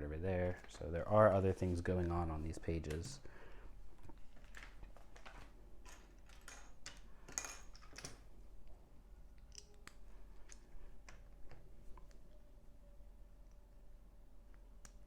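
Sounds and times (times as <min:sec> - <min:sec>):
rustling handling noise: 0:00.4 - 0:08.6
plastic pieces clicking together: 0:04.4 - 0:08.2.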